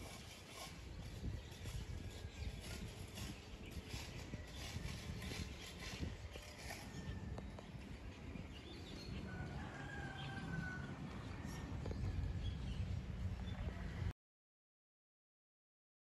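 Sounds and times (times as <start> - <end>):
rooster crowing: 9.2 - 11.9.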